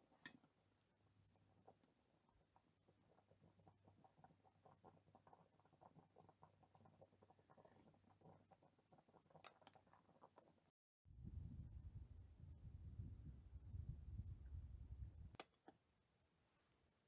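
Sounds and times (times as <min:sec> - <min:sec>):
faint soft clicks: 0:15.3 - 0:15.8.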